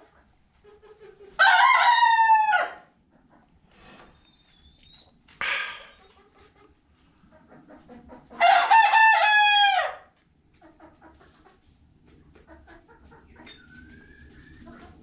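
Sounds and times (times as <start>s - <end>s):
rooster crowing: 1.4s - 2.9s, 8.4s - 10.1s
faint clucking: 5.4s - 8.4s.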